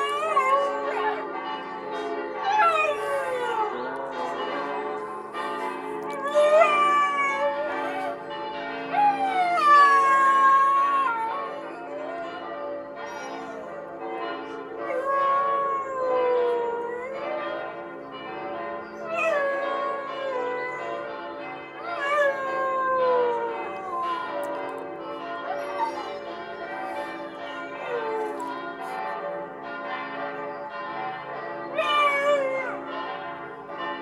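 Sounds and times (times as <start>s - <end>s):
dog howling: 0.0s - 1.3s, 2.4s - 3.9s, 4.7s - 8.3s, 8.9s - 12.4s, 13.1s - 17.4s, 19.0s - 21.0s, 21.8s - 24.6s, 25.6s - 29.0s, 31.7s - 32.8s
church bells ringing: 0.0s - 34.0s.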